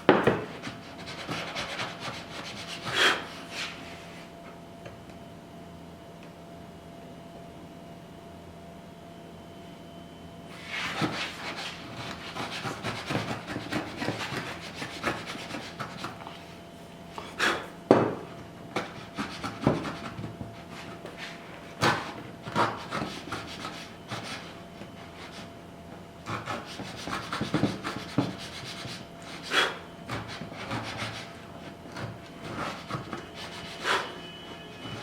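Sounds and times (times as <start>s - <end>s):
tool knocking on wood: 0.1s - 0.5s, 17.9s - 18.3s
tool paring and scraping wood: 10.8s - 16.3s, 18.7s - 24.5s, 26.2s - 34.1s.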